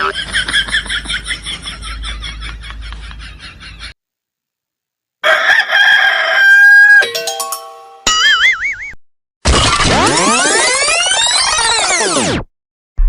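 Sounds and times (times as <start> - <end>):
rooster crowing: 5.2 - 7.0
stepped tones falling in pitch: 7.0 - 9.0, 9.9 - 12.4.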